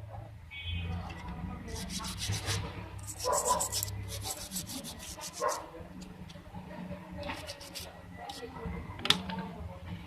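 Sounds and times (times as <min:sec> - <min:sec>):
rapid scratchy scraping: 0:01.7 - 0:05.7, 0:07.4 - 0:08.5.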